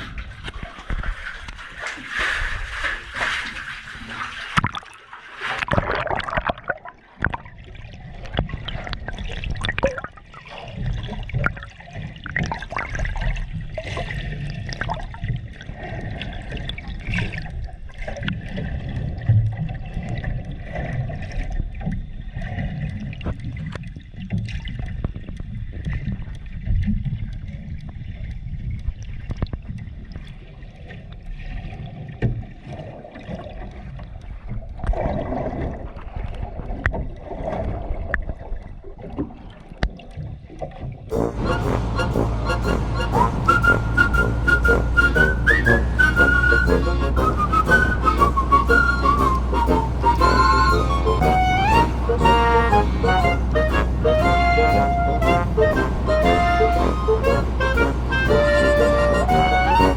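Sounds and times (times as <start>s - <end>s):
seawater sloshing and gurgling: 0.0s - 59.9s
low rumble: 41.1s - 59.9s.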